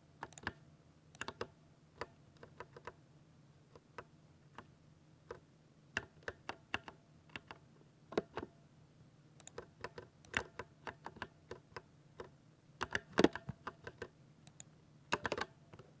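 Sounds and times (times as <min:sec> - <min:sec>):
mechanical keyboard typing: 0:01.2 - 0:01.5.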